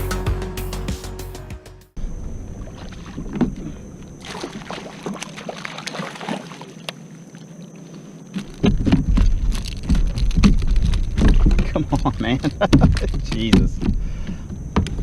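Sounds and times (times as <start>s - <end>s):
background music: 0.0s - 2.0s
water lapping against kayak hull: 2.4s - 14.7s.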